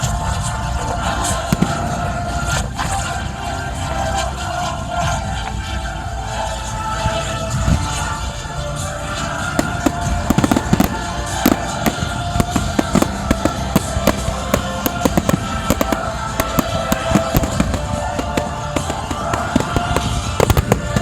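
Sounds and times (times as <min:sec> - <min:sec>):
fireworks cracking and banging: 0:01.5 - 0:02.9, 0:09.6 - 0:21.0
music playing: 0:09.6 - 0:21.0.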